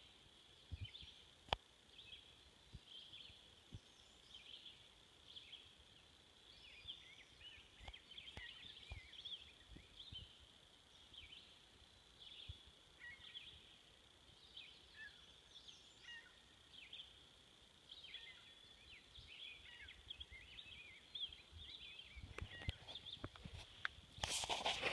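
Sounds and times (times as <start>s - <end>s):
faint birdsong chirps: 0.0s - 24.9s
faint clicks: 7.8s - 9.1s.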